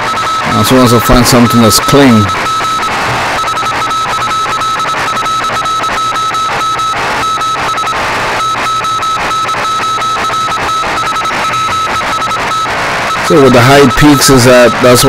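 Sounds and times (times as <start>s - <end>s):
morse code beep tone: 0.0s - 15.0s
radio static: 0.0s - 15.0s.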